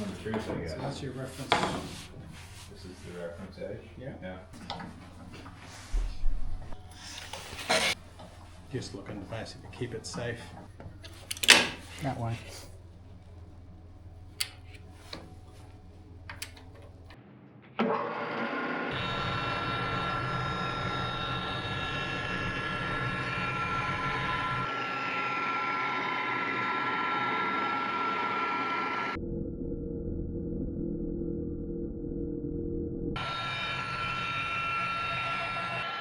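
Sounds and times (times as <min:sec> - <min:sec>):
table saw whining: 0:04.5 - 0:17.2, 0:17.8 - 0:29.2, 0:33.2 - 0:36.0.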